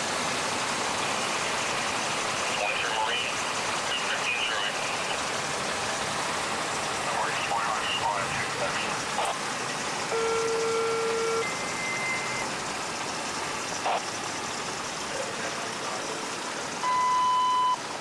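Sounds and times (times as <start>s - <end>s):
radio hiss: 2.5s - 5.3s, 7.1s - 9.4s, 13.8s - 14.1s
two-tone dispatch page: 10.1s - 12.5s, 16.8s - 17.8s.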